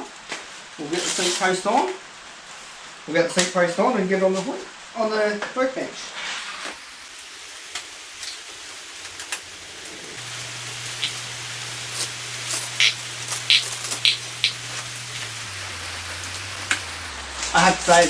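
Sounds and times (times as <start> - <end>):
rain hissing: 0.0 - 18.0
sharp taps and clicks: 12.8 - 15.3.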